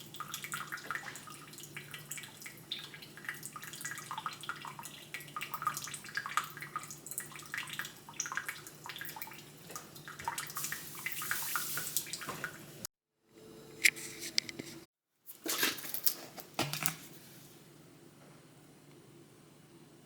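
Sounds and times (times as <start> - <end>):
water running: 0.0 - 12.9.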